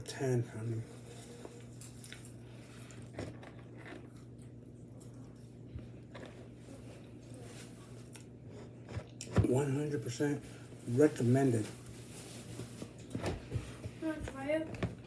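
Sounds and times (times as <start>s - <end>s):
faint low hum: 0.0s - 15.0s
person chewing crunchy food: 1.6s - 7.1s.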